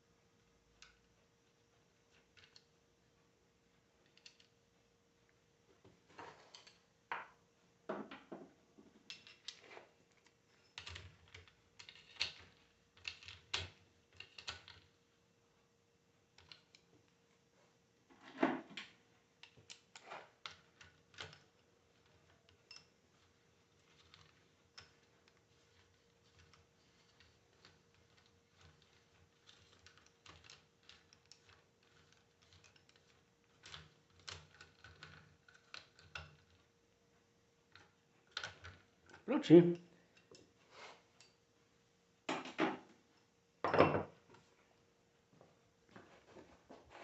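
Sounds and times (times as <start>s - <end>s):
metal parts and tools clicking: 4.0s - 4.5s, 9.1s - 15.0s, 19.4s - 36.7s.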